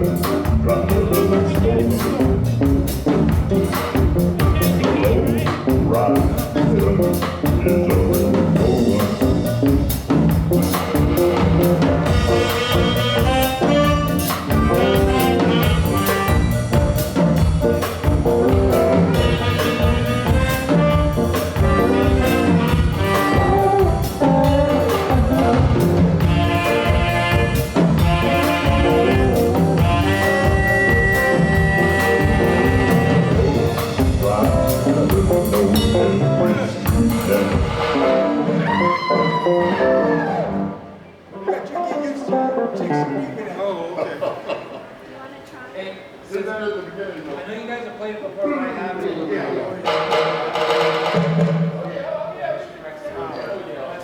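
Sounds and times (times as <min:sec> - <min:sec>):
drum kit beat: 0:00.0 - 0:40.8, 0:49.8 - 0:51.9
brass horns melody: 0:00.0 - 0:41.0, 0:49.8 - 0:51.7.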